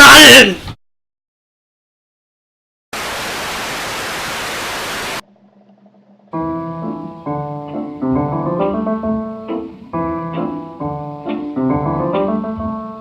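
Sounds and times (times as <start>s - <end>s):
loud static hiss: 3.0s - 5.2s
keyboard music: 6.4s - 13.0s.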